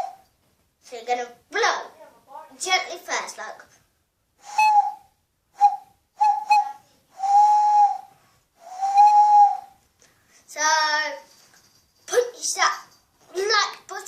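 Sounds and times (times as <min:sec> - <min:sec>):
hand owl call hooting: 0:00.0 - 0:00.2.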